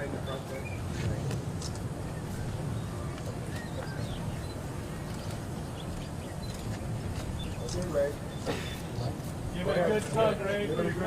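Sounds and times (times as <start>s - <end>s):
faint bird chirps: 2.2s - 9.1s.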